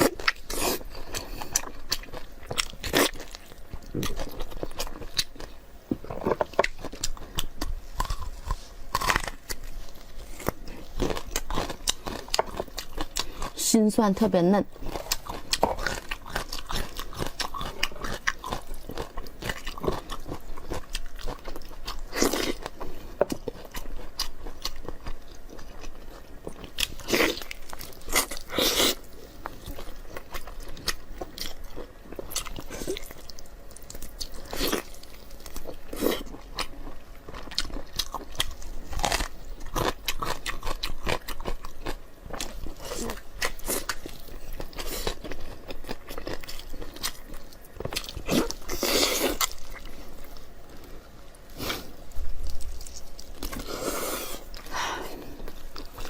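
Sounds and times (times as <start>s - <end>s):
chewing food: 0.0s - 56.0s
crunchy bites: 5.0s - 13.5s.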